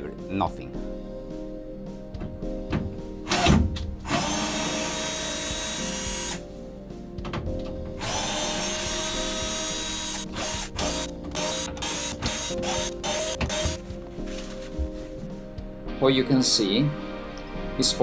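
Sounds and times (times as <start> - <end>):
background music: 0.0 - 18.0
electric drill-driver running: 4.1 - 6.4, 8.0 - 13.8.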